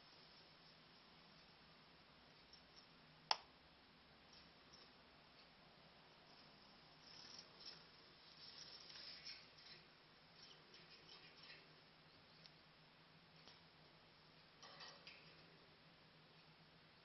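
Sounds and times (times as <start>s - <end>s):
small birds rustling in cage: 6.1s - 12.5s, 13.3s - 15.6s.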